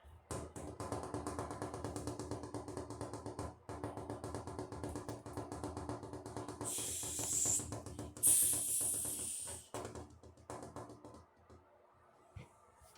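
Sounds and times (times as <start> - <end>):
vocal air brake hisses: 6.6 - 9.7
vocal train imitation chugging: 6.6 - 9.7.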